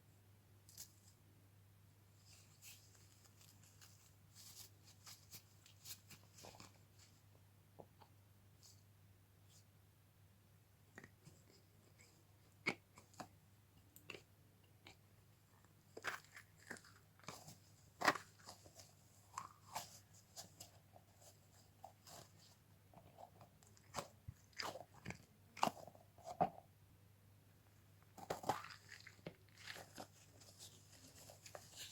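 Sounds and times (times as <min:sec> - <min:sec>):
stress balls squishing and crackling: 0:14.0 - 0:26.6, 0:28.0 - 0:31.9.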